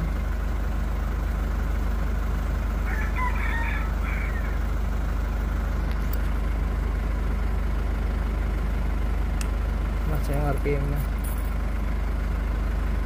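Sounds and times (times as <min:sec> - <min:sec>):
diesel engine idling: 0:00.0 - 0:13.0
rooster crowing: 0:02.8 - 0:04.8.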